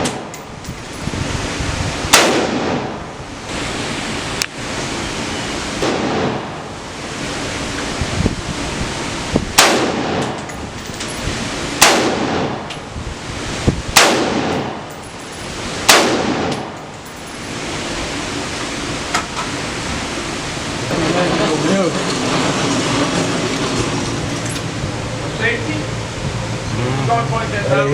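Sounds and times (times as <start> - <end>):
faint gunshots: 2.1 - 2.9, 14.0 - 14.7, 15.9 - 16.5
loud gunshots: 2.1 - 3.0, 5.8 - 6.7, 9.6 - 10.3, 11.8 - 12.6, 13.9 - 14.8, 15.8 - 16.7.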